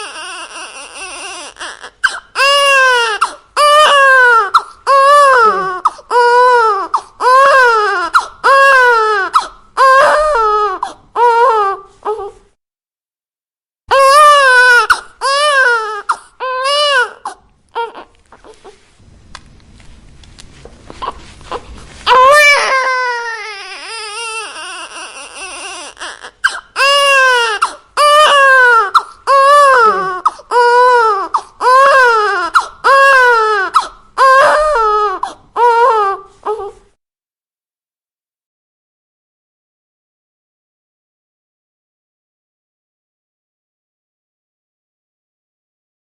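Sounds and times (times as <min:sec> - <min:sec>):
newborn baby crying: 0:00.0 - 0:12.5, 0:13.9 - 0:18.8, 0:20.9 - 0:36.9.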